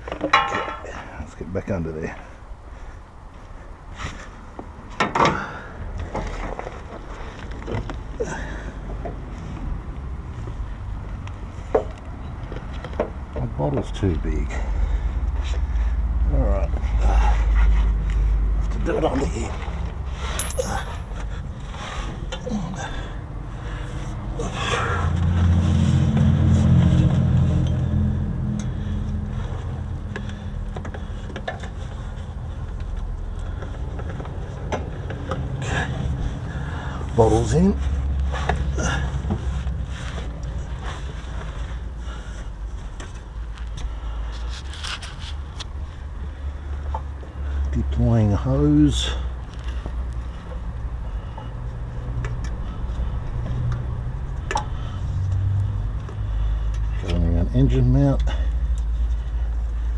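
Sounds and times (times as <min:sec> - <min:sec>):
low engine-like hum: 0:05.5 - 0:59.9.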